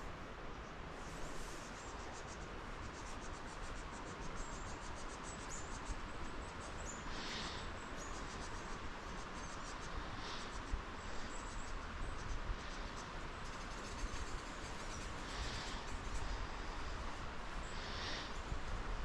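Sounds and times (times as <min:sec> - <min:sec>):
rustles: 0:00.0 - 0:04.2.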